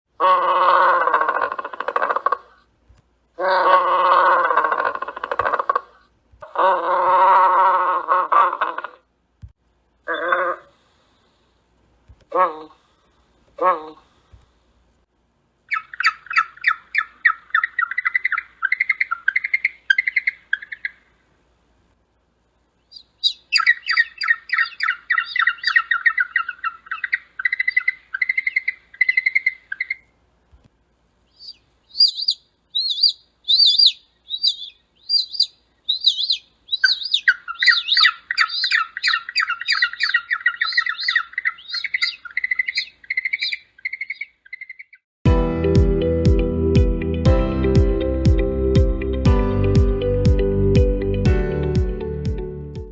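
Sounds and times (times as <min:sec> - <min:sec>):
higher quicker penguin calls: 0:00.2 - 0:02.6, 0:03.4 - 0:09.0
penguins chirping squawks: 0:15.7 - 0:21.0, 0:22.9 - 0:30.0, 0:31.4 - 0:45.0.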